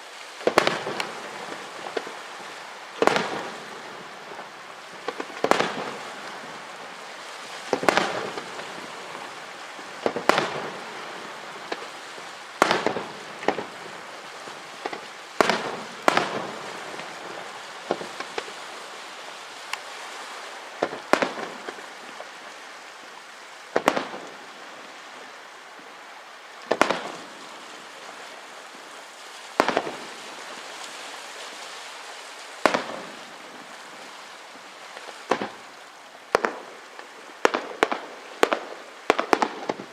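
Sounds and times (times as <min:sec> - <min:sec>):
crackling hiss: 0:00.0 - 0:39.9
firework shells bursting: 0:03.0 - 0:03.5, 0:14.8 - 0:17.2.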